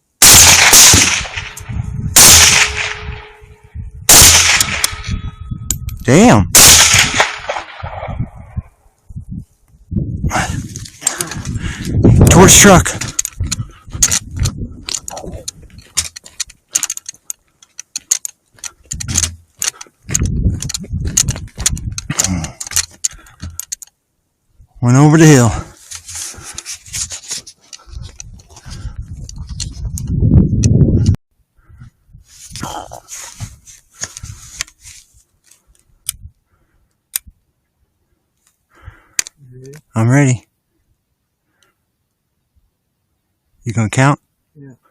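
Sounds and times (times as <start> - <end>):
clicks and rattles of equipment: 12.9 - 24.0, 25.8 - 30.0
rustling handling noise: 25.8 - 29.9, 32.3 - 35.9.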